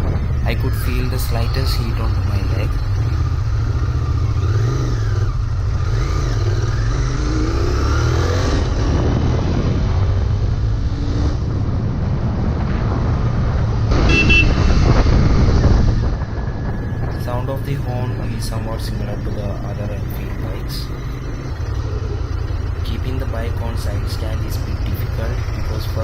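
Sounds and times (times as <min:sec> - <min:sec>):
motorcycle engine running: 0:00.0 - 0:26.0
motorcycle horn: 0:13.9 - 0:14.8.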